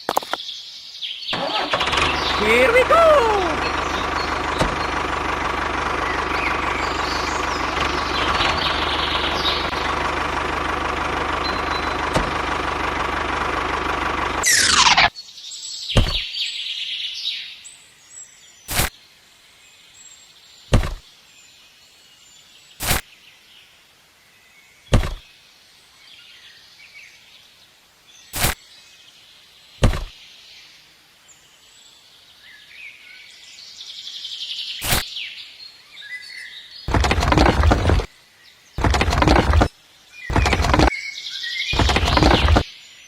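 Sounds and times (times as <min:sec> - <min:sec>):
birds chirping faintly: 0:00.0 - 0:16.6
sharp knocks: 0:16.0 - 0:16.2, 0:20.7 - 0:21.0, 0:24.9 - 0:25.2, 0:29.8 - 0:30.1, 0:36.9 - 0:38.1, 0:38.8 - 0:39.7, 0:40.3 - 0:40.9, 0:41.8 - 0:42.6.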